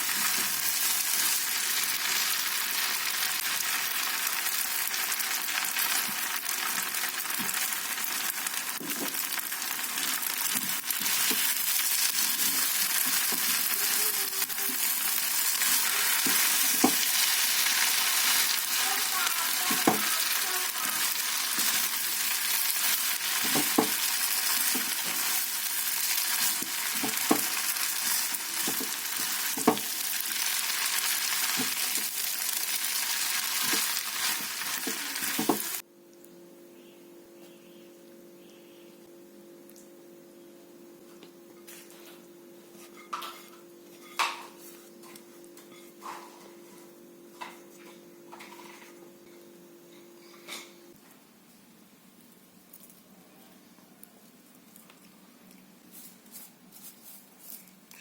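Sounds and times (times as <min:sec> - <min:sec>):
stir-fry sizzling in a pan: 0:00.0 - 0:35.8.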